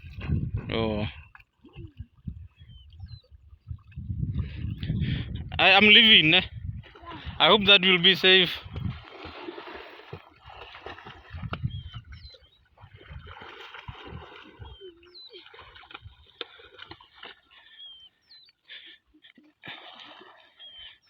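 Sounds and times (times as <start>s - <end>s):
wind on microphone: 0.0s - 7.7s, 8.6s - 9.3s, 10.4s - 16.3s
water splashing and sloshing: 0.0s - 21.0s.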